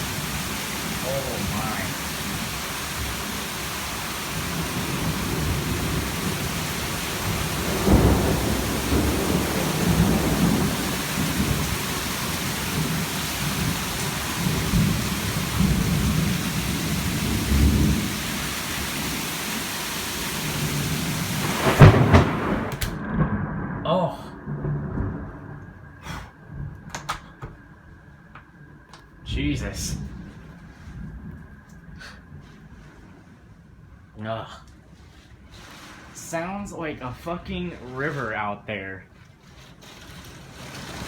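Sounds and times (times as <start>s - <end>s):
heavy rain pouring: 0.0s - 33.4s, 34.1s - 41.0s
low rumble: 21.4s - 26.9s, 27.5s - 34.2s.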